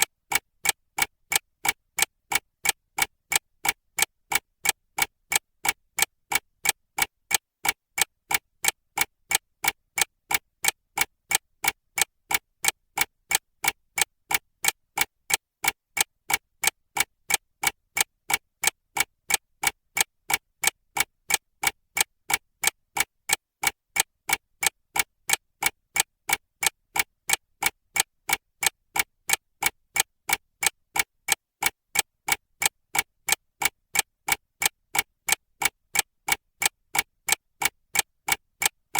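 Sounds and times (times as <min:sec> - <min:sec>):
mechanical clock ticking: 0:00.0 - 0:38.9.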